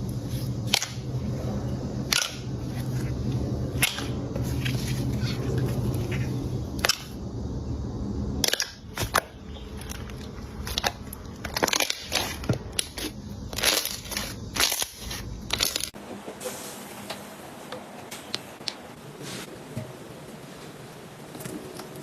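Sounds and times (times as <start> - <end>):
low hum: 0.0 - 16.0
slime crackling and popping: 9.8 - 16.0.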